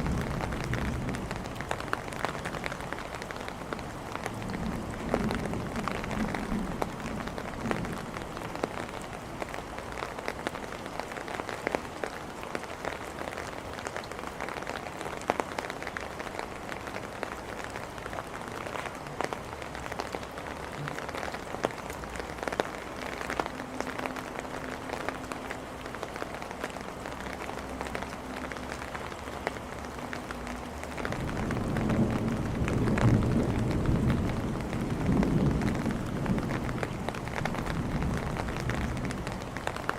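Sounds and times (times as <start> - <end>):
rain on hard surfaces: 0.0 - 39.9
thunder rumble: 31.0 - 39.9.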